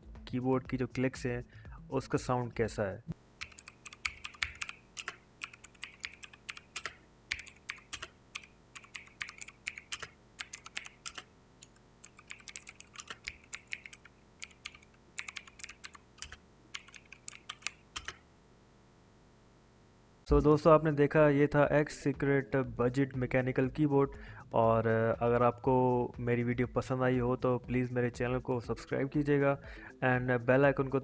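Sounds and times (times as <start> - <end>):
mechanical keyboard typing: 3.4 - 18.2.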